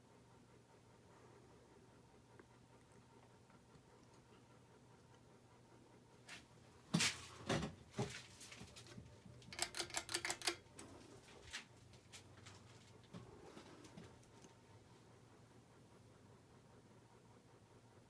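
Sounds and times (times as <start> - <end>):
faint steady hum: 0.0 - 18.0
sharp clicks and knocks: 8.8 - 10.9
rattle of small clicks: 9.4 - 10.9.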